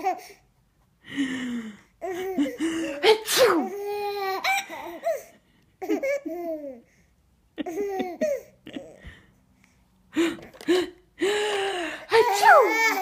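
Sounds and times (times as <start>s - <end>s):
baby laughing: 2.0s - 6.8s, 7.6s - 9.0s, 12.1s - 13.0s.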